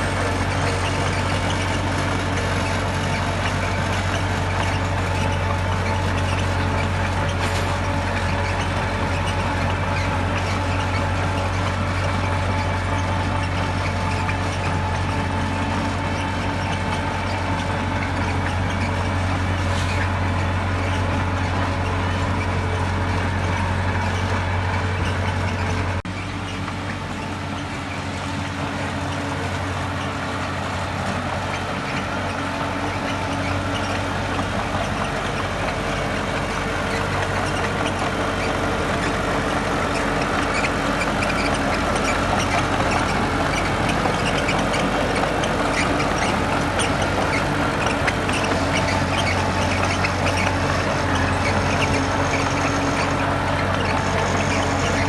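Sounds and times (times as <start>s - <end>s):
heavy diesel engine droning: 0.0s - 55.0s.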